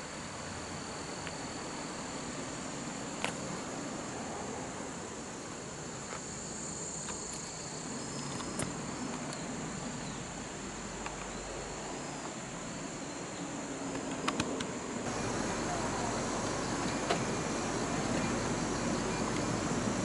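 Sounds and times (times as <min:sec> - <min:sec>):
insects chorus: 0:00.0 - 0:20.0.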